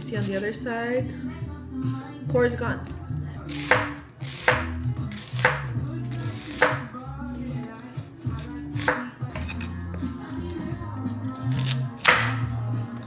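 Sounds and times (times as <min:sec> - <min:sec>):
background music: 0:00.0 - 0:13.0
knife chopping on cutting board: 0:03.5 - 0:07.0, 0:08.8 - 0:09.5, 0:11.5 - 0:12.4.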